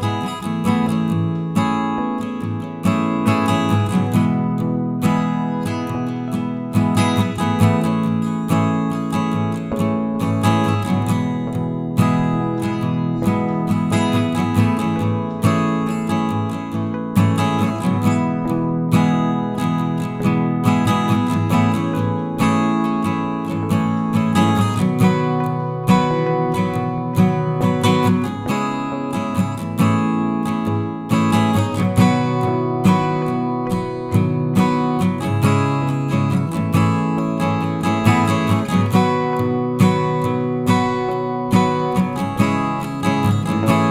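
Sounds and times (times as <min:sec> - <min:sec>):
acoustic guitar strumming: 0:00.0 - 0:43.9.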